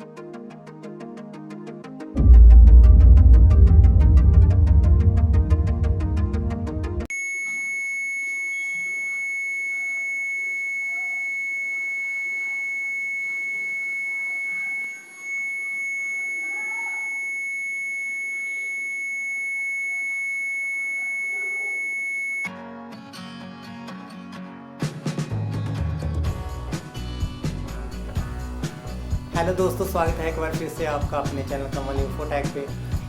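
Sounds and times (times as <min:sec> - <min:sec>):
laptop high-pitched startup beep: 0:07.1 - 0:22.5.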